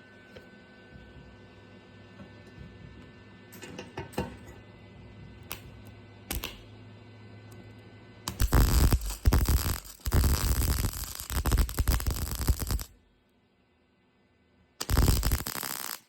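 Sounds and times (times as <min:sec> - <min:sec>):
low steady hum: 0:00.0 - 0:15.5
welding arc crackling: 0:06.3 - 0:06.7, 0:08.3 - 0:12.9, 0:14.8 - 0:16.0.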